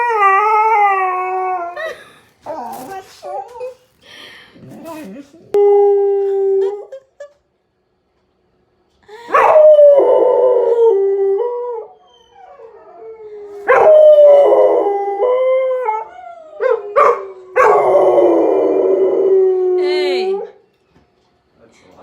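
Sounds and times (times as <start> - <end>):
dogs howling: 0.0 - 1.9, 9.3 - 20.6.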